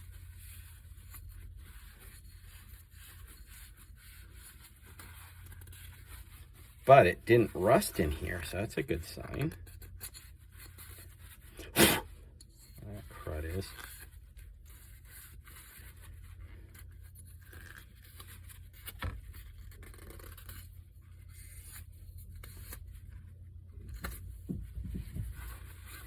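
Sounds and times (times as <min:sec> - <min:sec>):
small parts scraping and clicking: 0:14.8 - 0:19.0.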